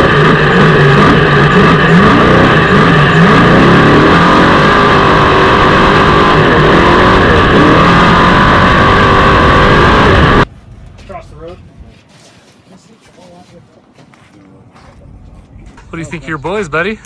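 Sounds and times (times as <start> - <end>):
truck engine revving: 0.0 - 11.0.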